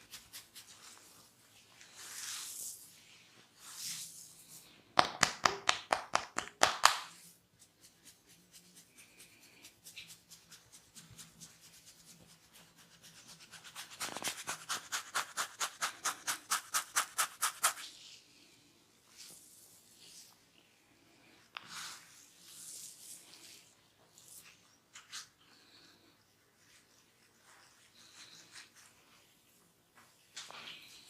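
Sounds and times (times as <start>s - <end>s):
hands cracking during head massage: 5.0s - 7.2s.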